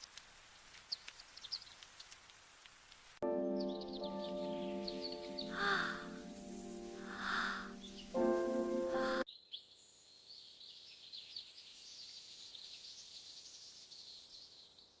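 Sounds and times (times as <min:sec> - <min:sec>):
background music: 0:03.2 - 0:09.3
faint high-pitched chirping: 0:03.4 - 0:15.0.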